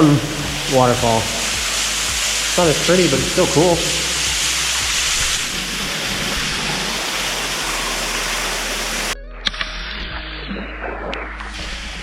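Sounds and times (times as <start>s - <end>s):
small waterfall rushing: 0.0s - 9.2s.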